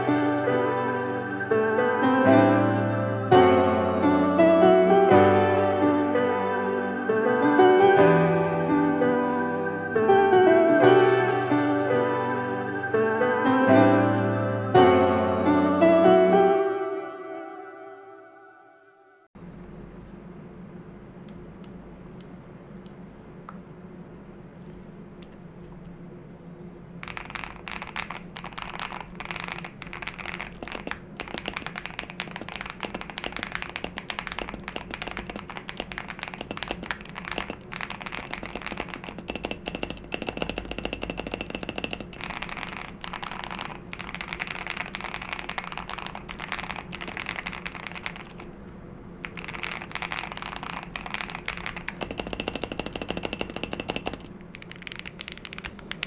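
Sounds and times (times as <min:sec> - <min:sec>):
mechanical keyboard typing: 0:27.0 - 0:56.0.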